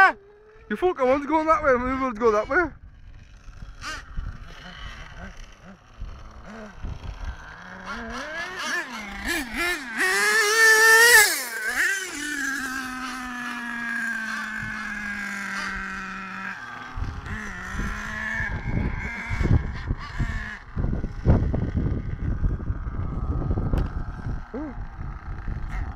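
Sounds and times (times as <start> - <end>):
small glow engine revving: 2.2 - 25.9.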